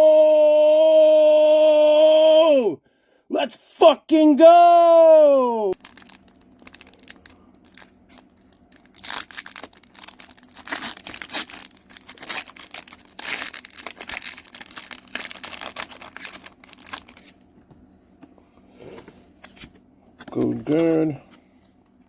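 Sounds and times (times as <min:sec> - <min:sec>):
foil wrapper crinkling and tearing: 0:05.8 - 0:17.4.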